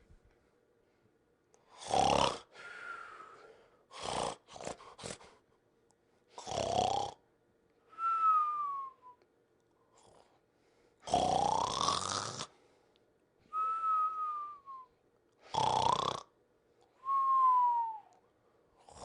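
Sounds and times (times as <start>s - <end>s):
cartoon snore with whistle: 11.1s - 12.5s, 15.5s - 16.2s.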